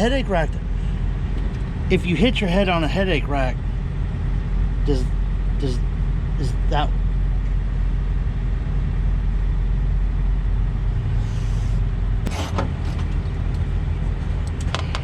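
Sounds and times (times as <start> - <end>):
diesel truck engine idling: 0.0 - 15.0
air hiss: 11.1 - 12.5.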